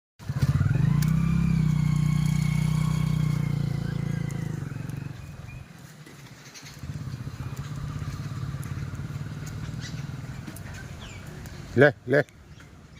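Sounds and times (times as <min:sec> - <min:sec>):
small engine running: 0:00.2 - 0:05.6, 0:06.5 - 0:11.3.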